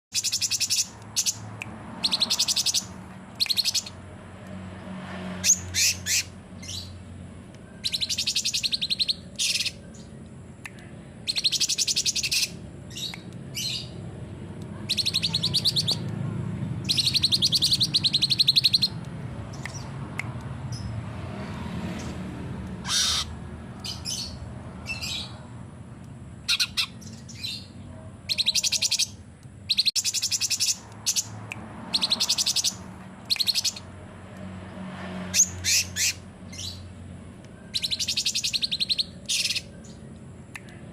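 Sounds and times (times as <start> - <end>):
bird trilling song: 0.1 - 4.0, 5.4 - 14.0, 14.9 - 16.1, 16.8 - 20.0, 22.8 - 25.4, 26.4 - 33.9, 35.4 - 40.8
sharp bird calls: 0.1 - 4.0, 5.4 - 7.0, 7.6 - 10.2, 11.2 - 14.0, 14.8 - 16.1, 16.8 - 20.0, 22.7 - 25.5, 26.4 - 33.9, 35.3 - 37.0, 37.6 - 40.8.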